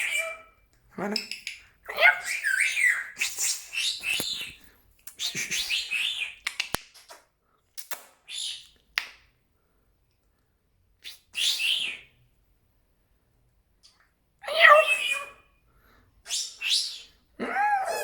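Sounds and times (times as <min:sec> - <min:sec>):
parrot chirping: 0:00.0 - 0:04.6, 0:14.4 - 0:15.5.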